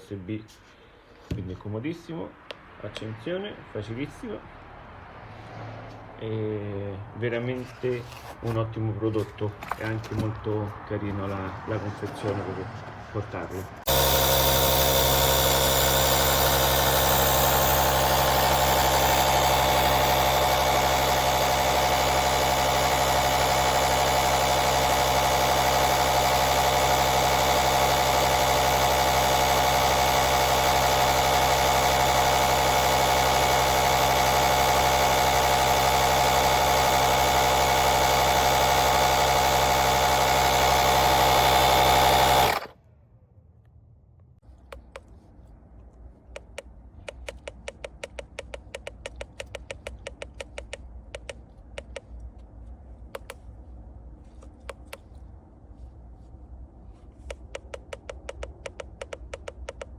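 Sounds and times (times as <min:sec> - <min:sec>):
air compressor running: 0:13.8 - 0:42.8, 0:53.1 - 0:53.4.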